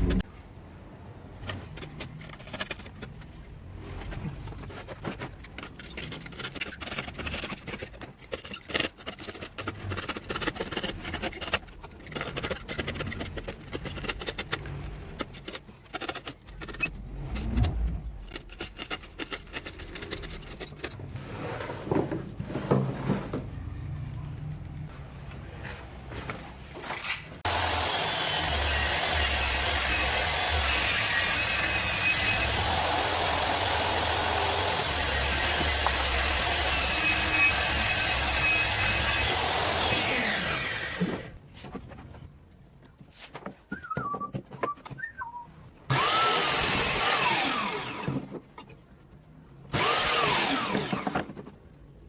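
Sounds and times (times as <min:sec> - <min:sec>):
tools clicking knocking and scraping: 0:01.4 - 0:21.2
power tool running: 0:27.0 - 0:41.3, 0:45.9 - 0:48.2, 0:49.7 - 0:51.2.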